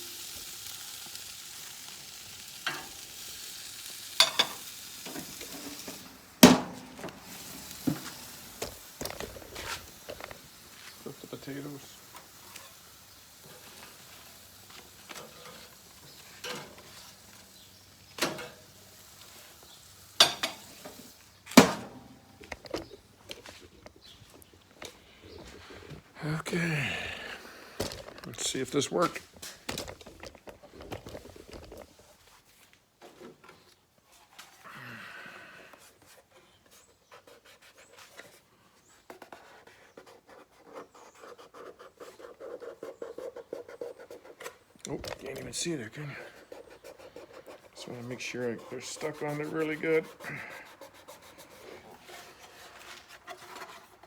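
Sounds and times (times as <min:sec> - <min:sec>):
food sizzling in a frying pan: 0:00.0 - 0:22.5
hands rubbing paper: 0:35.9 - 0:54.0
short scratchy strokes: 0:45.3 - 0:54.0.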